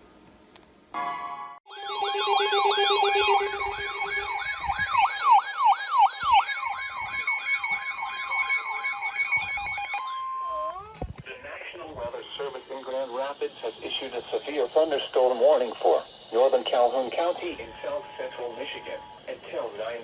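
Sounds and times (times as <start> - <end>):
steady alert tones: 1.7 - 11.0
electronic siren yelping: 1.7 - 11.2.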